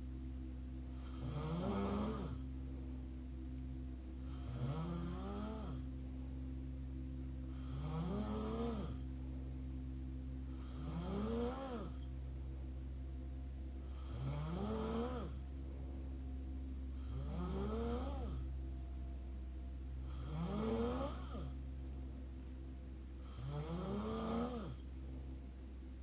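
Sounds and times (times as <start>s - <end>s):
steady low hum: 0.0s - 26.0s
person snoring: 1.0s - 2.4s, 4.2s - 5.9s, 7.5s - 9.0s, 10.5s - 12.1s, 13.8s - 15.4s, 17.0s - 18.4s, 20.1s - 21.6s, 23.2s - 24.8s.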